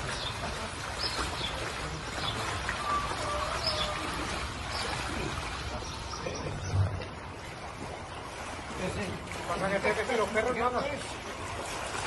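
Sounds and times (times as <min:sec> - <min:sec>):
small birds chirping: 0:00.0 - 0:06.9
flowing water rushing: 0:00.0 - 0:12.0.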